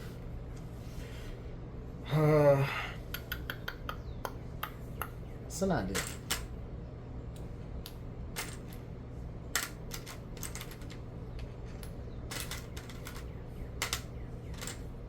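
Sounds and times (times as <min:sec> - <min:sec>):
plastic toy bricks clicking: 0:09.6 - 0:11.0, 0:11.7 - 0:14.8.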